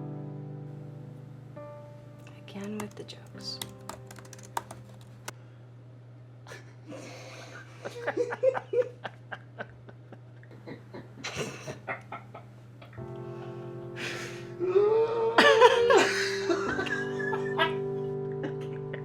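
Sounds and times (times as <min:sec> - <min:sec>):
scattered clicks: 0:02.6 - 0:05.3
people laughing: 0:06.5 - 0:13.0, 0:15.3 - 0:19.0.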